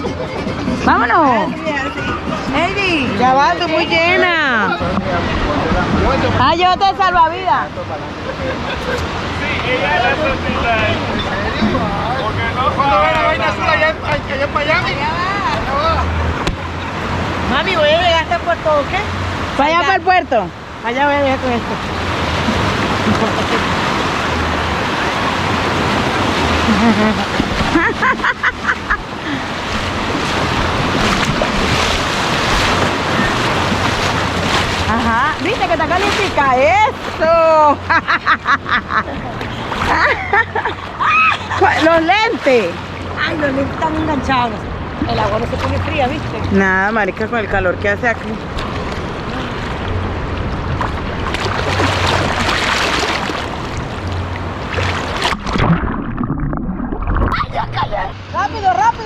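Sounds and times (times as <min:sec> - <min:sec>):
sea surf washing in: 0:00.9 - 0:38.6, 0:48.2 - 0:59.0
wind rumbling on microphone: 0:21.7 - 0:37.2, 0:48.2 - 0:59.0.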